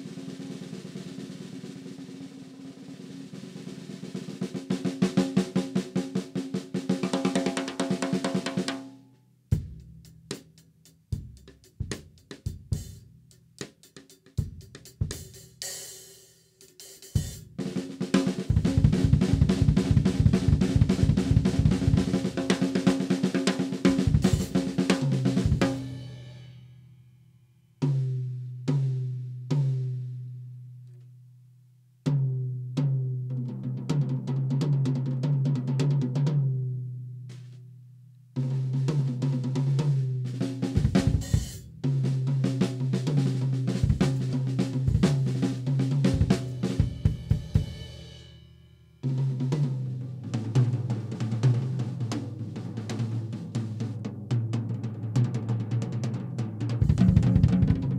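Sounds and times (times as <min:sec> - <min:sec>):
drum kit playing: 0:00.0 - 0:08.9, 0:09.5 - 0:26.5, 0:38.4 - 0:48.4, 0:49.0 - 0:57.9
hi-hat and cymbals: 0:09.6 - 0:17.5.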